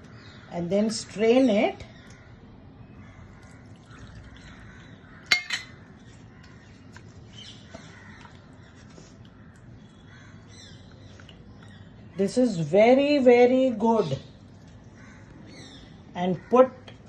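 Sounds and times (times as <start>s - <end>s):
kitchenware clinking: 5.3s - 5.8s.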